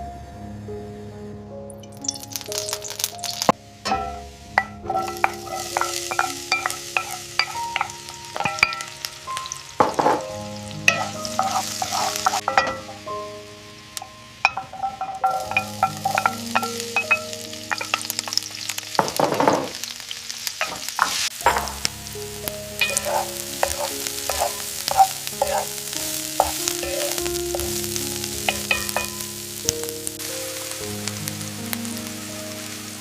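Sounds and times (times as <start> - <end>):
food sizzling in a pan: 1.7 - 33.0
utensil scraping a pan: 3.9 - 13.1, 14.4 - 19.8, 20.6 - 21.8, 22.8 - 29.2.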